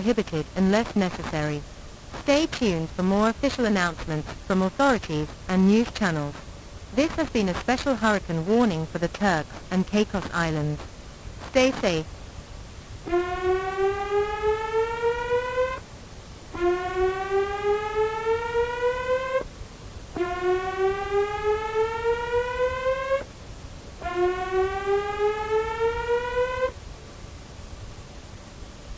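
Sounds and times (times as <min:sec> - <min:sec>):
rising buzzy alarm wail: 0:13.1 - 0:15.8, 0:16.6 - 0:19.5, 0:20.2 - 0:23.3, 0:24.0 - 0:26.8.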